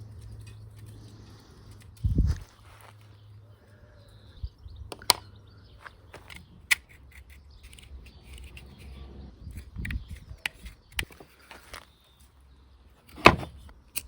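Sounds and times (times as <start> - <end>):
metal parts and hand tools clicking: 0.0 - 2.2, 6.1 - 12.4, 13.0 - 14.0.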